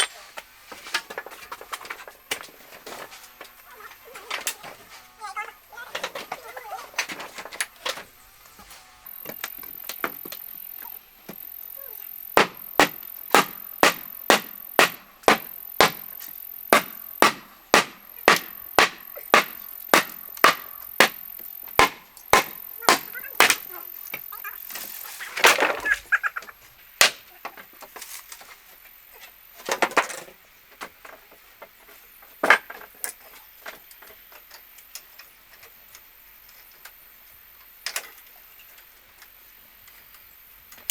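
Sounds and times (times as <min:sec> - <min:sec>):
sharp knocks: 0:12.4 - 0:24.3.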